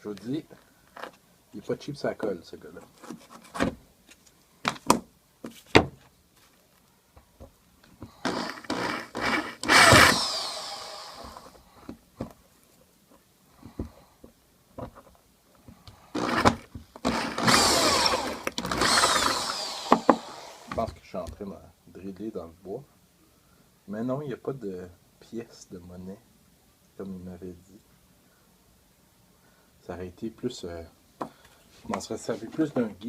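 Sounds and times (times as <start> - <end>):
electric drill boring into wood: 8.2 - 11.6, 16.1 - 20.8.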